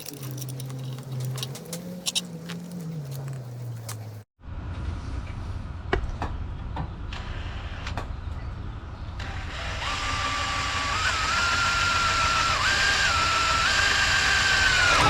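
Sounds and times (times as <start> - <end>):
small power tool whine: 9.2 - 15.0.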